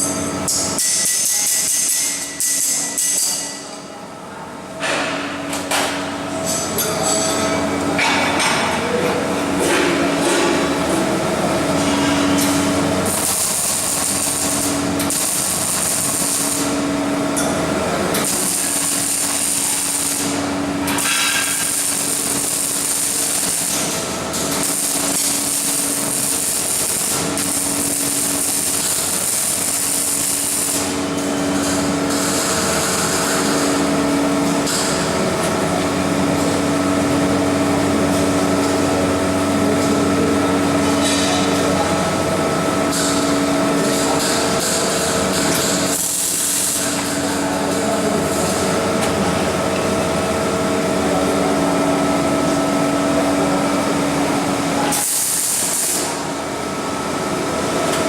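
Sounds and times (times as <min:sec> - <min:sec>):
low machine hum: 0:02.1 - 0:58.0
arc welding crackling hiss: 0:12.4 - 0:17.0, 0:18.1 - 0:33.9, 0:45.6 - 0:47.2, 0:54.9 - 0:56.2.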